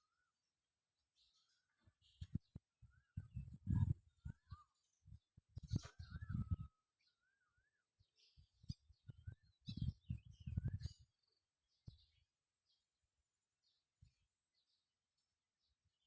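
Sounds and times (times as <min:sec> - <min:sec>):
birds chirping and calling: 0:01.2 - 0:12.2.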